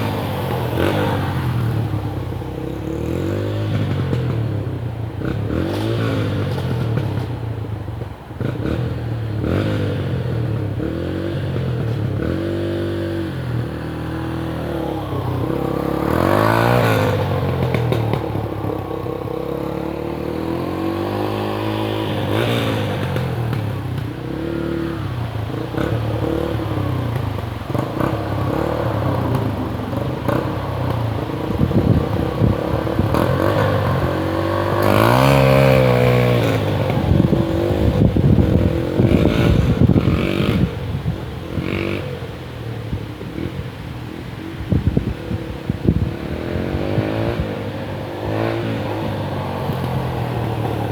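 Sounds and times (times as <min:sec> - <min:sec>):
dirt bike engine revving: 0:08.4 - 0:42.0, 0:45.8 - 0:50.9.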